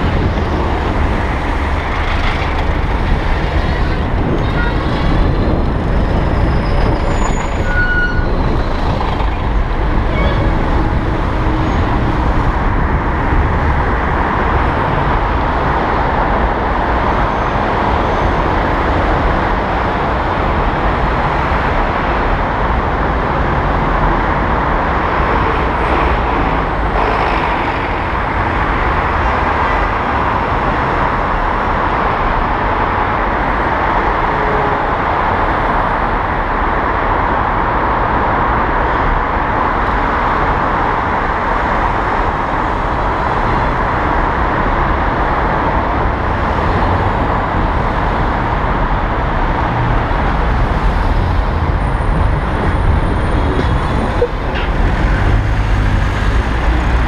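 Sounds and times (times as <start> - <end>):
wind rushing: 0.0 - 16.8
road noise: 0.0 - 57.0.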